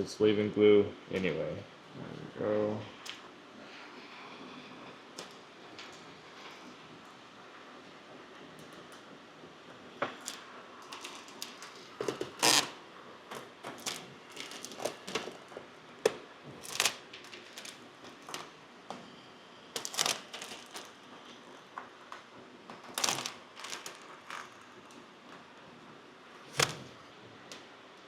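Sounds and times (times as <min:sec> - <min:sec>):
plastic film crinkling: 0:10.1 - 0:15.6, 0:16.5 - 0:18.6, 0:19.8 - 0:21.4, 0:22.8 - 0:24.9.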